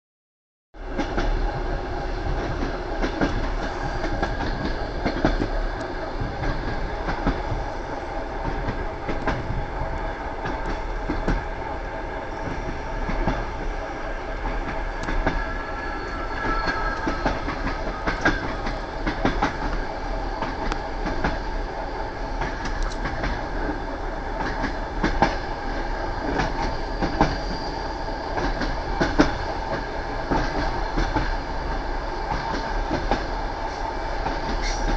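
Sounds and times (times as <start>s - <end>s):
train wheels clattering on rails: 0.8s - 34.9s
faint squeal: 15.3s - 18.6s, 26.7s - 28.2s.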